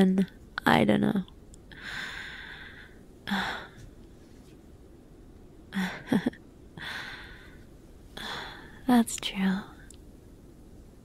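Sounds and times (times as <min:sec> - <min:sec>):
woman breathing and sighing: 0:01.7 - 0:04.4, 0:05.7 - 0:08.9
woman humming: 0:05.7 - 0:06.4.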